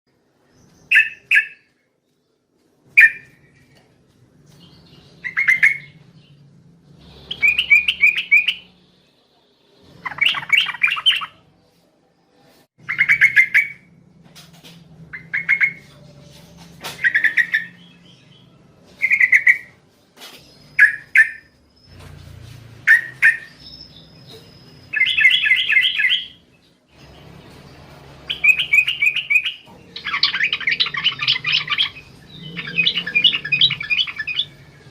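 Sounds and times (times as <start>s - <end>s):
bird singing chattering phrases: 4.6s - 6.4s, 7.0s - 8.8s, 9.9s - 11.4s, 15.0s - 18.2s, 22.8s - 34.9s.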